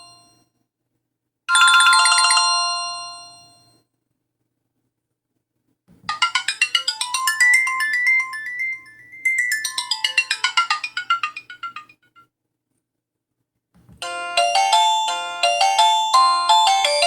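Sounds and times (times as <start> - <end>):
mobile phone electronic melody: 6.1 - 12.2, 14.0 - 17.0.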